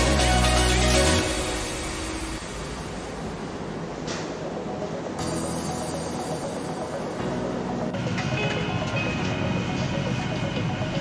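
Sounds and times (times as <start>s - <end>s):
music: 0.0s - 2.5s, 4.7s - 11.0s
airliner cabin noise: 1.1s - 11.0s.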